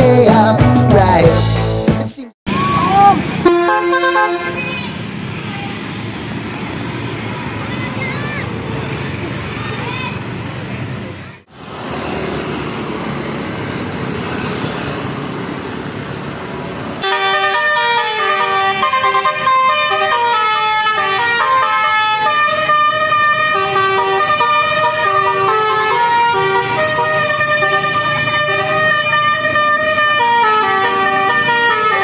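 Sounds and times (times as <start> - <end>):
multi-tone horn melody: 2.7 - 4.8, 17.0 - 32.0.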